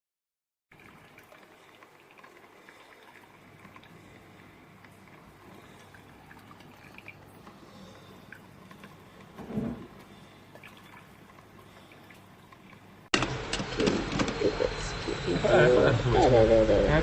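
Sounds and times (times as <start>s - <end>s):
water dripping and gurgling: 0.7s - 13.1s
drip coffee maker running: 0.7s - 17.0s.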